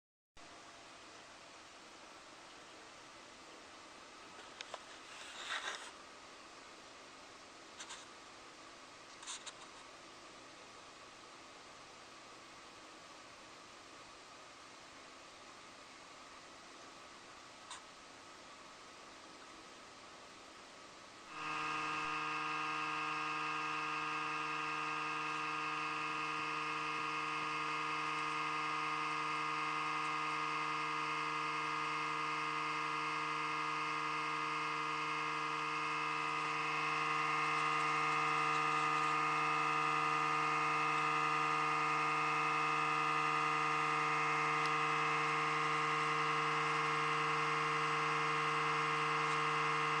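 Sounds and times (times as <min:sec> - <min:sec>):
power supply electrical buzz: 0:21.0 - 0:50.0
high whine: 0:21.2 - 0:50.0.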